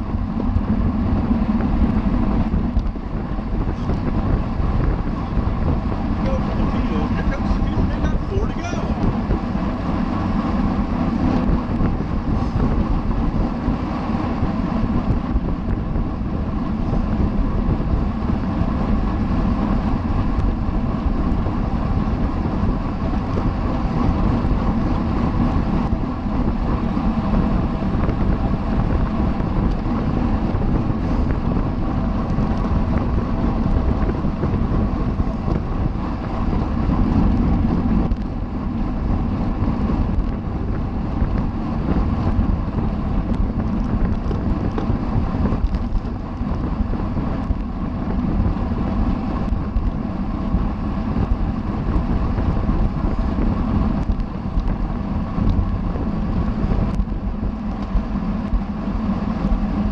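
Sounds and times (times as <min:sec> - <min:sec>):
bicycle tyres and drivetrain hum: 0:00.0 - 0:59.9
wind rushing over microphone: 0:00.0 - 0:59.9.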